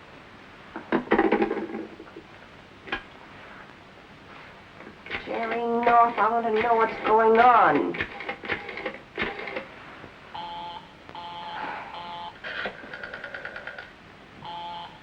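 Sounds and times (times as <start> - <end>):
buzzy telephone tone: 10.3 - 15.0
telephone line tone beeping: 10.3 - 15.0.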